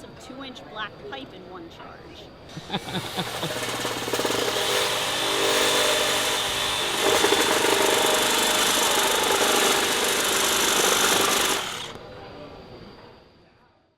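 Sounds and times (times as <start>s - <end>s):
reciprocating saw cutting: 2.5s - 12.0s.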